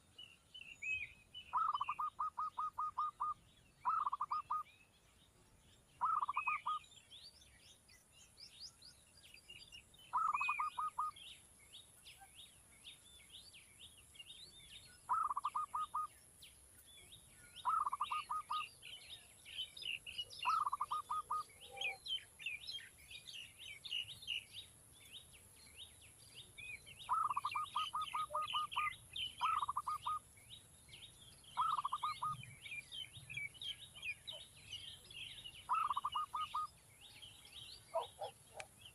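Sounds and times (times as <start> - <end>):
high-pitched bird chirping: 1.0 - 4.7, 6.0 - 6.9, 10.1 - 11.2, 15.0 - 16.1, 17.5 - 18.8, 20.0 - 22.9, 26.8 - 30.2, 31.5 - 36.8.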